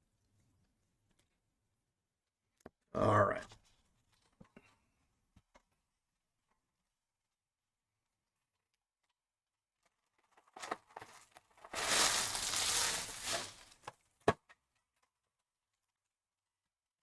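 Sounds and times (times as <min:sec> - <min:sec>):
packaging tearing and crinkling: 0:10.6 - 0:13.9.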